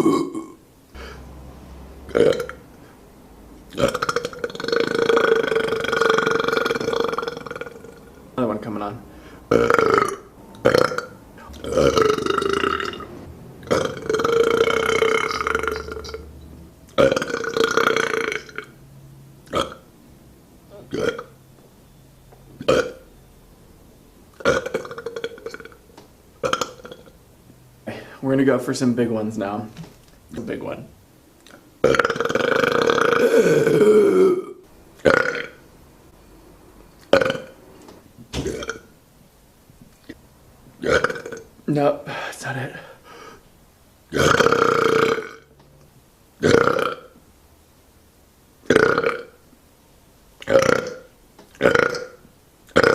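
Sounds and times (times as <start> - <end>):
person belching: 0.0 - 1.2, 2.1 - 2.6, 3.7 - 8.2, 9.5 - 16.3, 16.9 - 18.8, 19.5 - 19.9, 20.7 - 21.4, 22.6 - 23.1, 24.4 - 25.8, 26.4 - 27.2, 31.5 - 35.6, 37.0 - 37.6, 38.4 - 38.9, 40.8 - 41.5, 44.1 - 45.5, 46.4 - 47.2, 48.7 - 49.4, 50.4 - 52.9
person burping: 0.0 - 1.2, 2.1 - 2.6, 3.7 - 8.2, 9.5 - 16.3, 17.0 - 18.8, 19.5 - 19.9, 20.7 - 21.4, 22.6 - 23.1, 24.4 - 25.8, 26.4 - 27.2, 31.5 - 35.6, 37.0 - 37.6, 38.4 - 38.9, 40.8 - 41.5, 44.1 - 45.5, 46.4 - 47.2, 48.7 - 49.4, 50.4 - 52.9.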